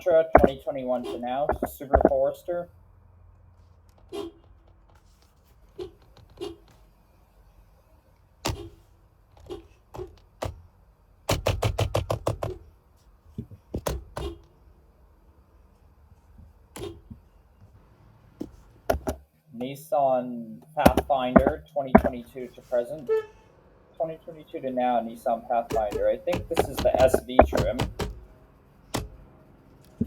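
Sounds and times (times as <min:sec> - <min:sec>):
knocks and taps: 0:00.4 - 0:00.6, 0:01.5 - 0:02.2, 0:18.9 - 0:19.2, 0:20.8 - 0:22.2, 0:25.7 - 0:28.3.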